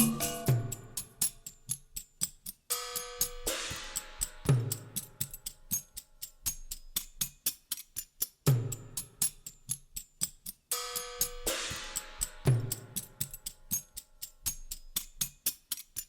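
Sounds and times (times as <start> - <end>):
held chord: 0.0 - 0.7
cymbal crash: 0.0 - 0.8
hi-hat ticks: 0.0 - 16.0.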